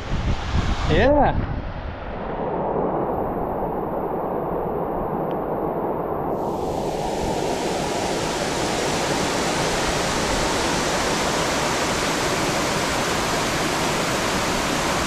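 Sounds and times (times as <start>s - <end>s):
waterfall crashing: 6.4s - 15.0s.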